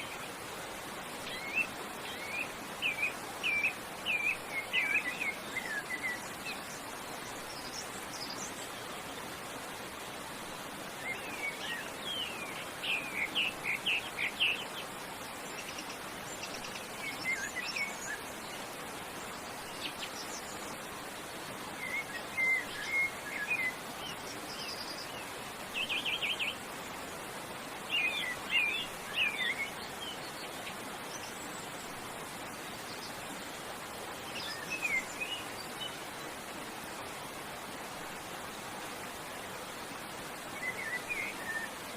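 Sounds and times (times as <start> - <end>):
songbirds chirping and trilling: 0.0 - 41.9
waterfall rushing: 0.0 - 41.9.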